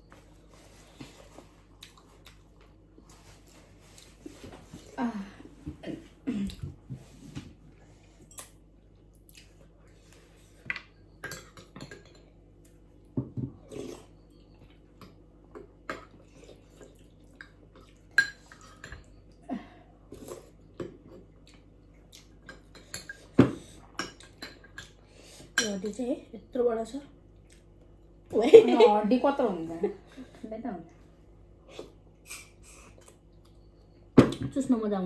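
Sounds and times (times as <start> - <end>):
utensils clinking against dishes: 10.8 - 12.4.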